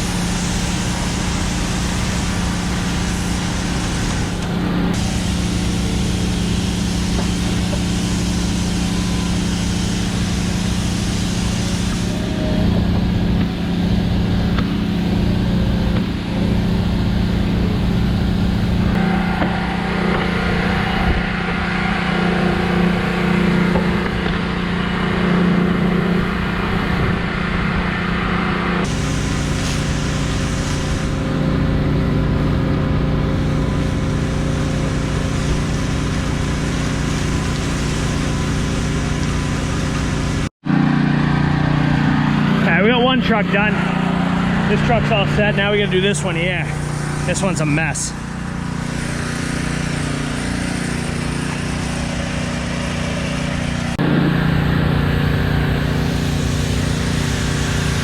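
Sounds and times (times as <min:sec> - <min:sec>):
rushing hiss: 0:00.0 - 0:12.4, 0:28.8 - 0:31.3, 0:33.2 - 0:40.5, 0:46.0 - 0:58.0
engine running steadily: 0:00.0 - 0:58.0.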